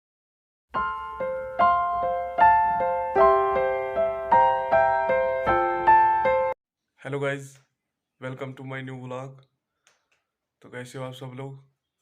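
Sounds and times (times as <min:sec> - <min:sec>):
gentle piano melody: 0:00.8 - 0:06.6.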